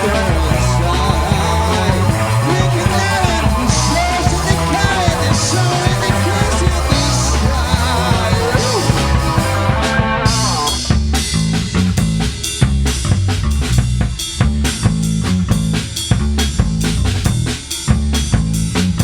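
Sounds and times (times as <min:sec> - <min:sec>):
guitar bending notes: 0:00.0 - 0:11.0
rock band playing: 0:00.0 - 0:19.0.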